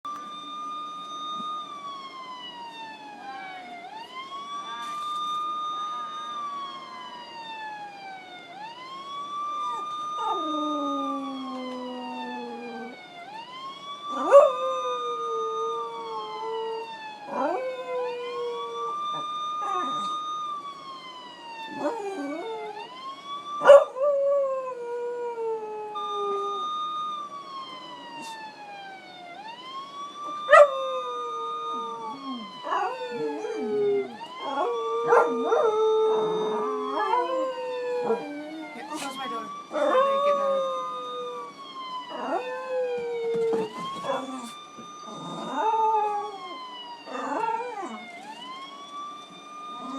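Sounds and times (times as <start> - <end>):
police siren through phone speaker: 0.0 - 49.9
dog howling: 30.3 - 41.5, 42.1 - 48.3.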